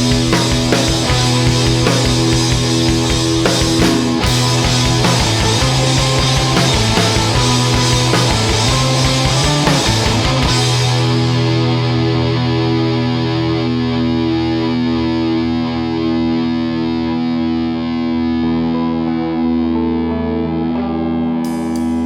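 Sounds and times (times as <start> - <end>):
distorted guitar chord ringing: 0.0 - 22.0
loud rock music: 0.0 - 22.0.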